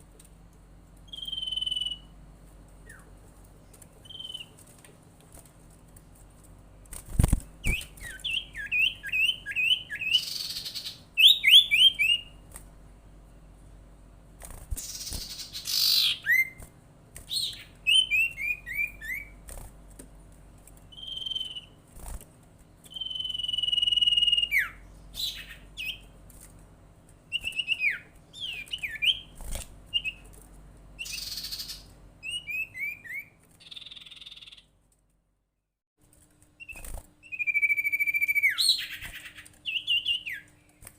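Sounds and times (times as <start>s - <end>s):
bird whistling: 1.1s - 2.1s, 4.0s - 4.5s, 7.6s - 12.4s, 14.8s - 16.6s, 17.3s - 19.4s, 20.9s - 21.8s, 22.9s - 26.0s, 27.3s - 29.4s, 31.0s - 34.6s, 36.6s - 40.5s.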